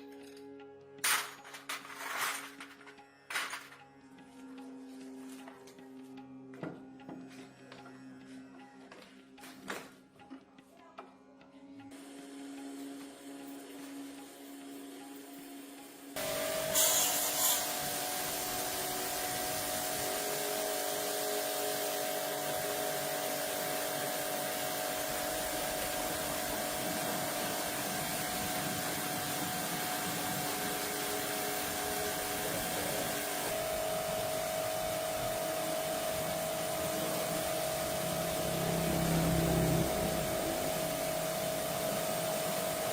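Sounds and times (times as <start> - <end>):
small motor humming: 12.0 - 42.9
sharp hiss: 16.2 - 39.1.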